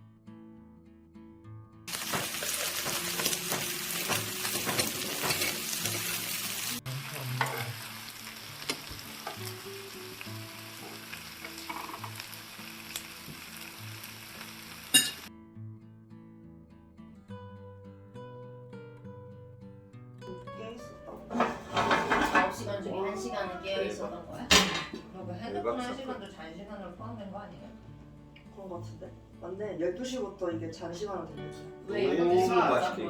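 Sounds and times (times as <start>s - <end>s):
soft acoustic guitar music: 0.0s - 33.0s
food sizzling with pops: 1.9s - 15.3s.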